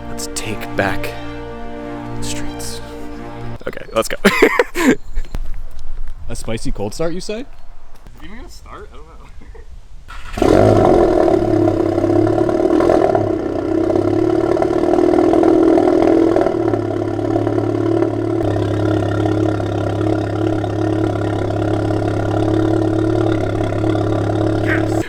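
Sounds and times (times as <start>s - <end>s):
car engine starting and idling: 0.0s - 3.6s, 10.1s - 25.0s.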